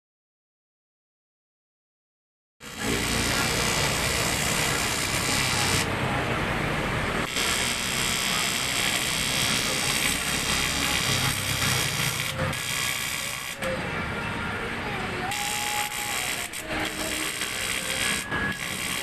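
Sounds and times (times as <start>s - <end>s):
electric machine buzz: 2.6s - 5.9s, 7.2s - 13.8s, 15.3s - 19.0s.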